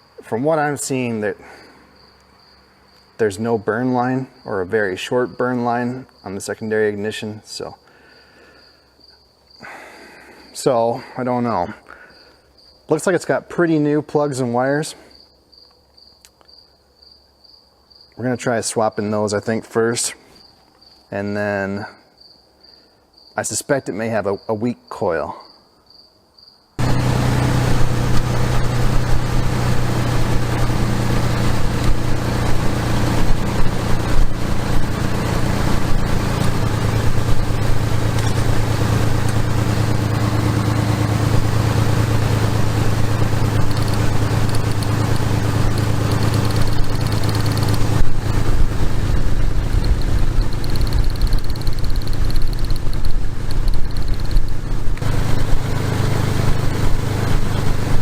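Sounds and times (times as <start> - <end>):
truck engine running: 26.8 - 58.0.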